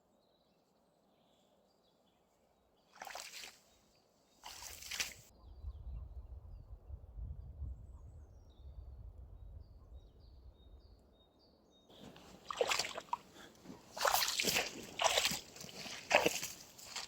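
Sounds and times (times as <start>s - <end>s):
water sloshing and splashing: 3.0s - 3.7s, 4.4s - 5.3s, 11.9s - 17.0s.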